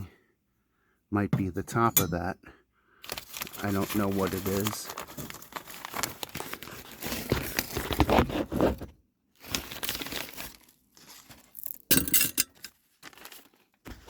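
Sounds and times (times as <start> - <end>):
packaging crinkling and rustling: 3.0 - 11.9, 12.6 - 14.0
light clinks of metal parts: 11.9 - 12.8.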